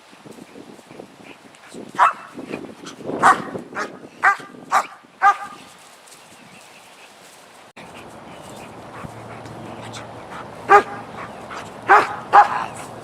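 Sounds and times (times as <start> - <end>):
dog barking sharply: 2.0 - 2.3, 3.2 - 5.6, 10.7 - 12.8.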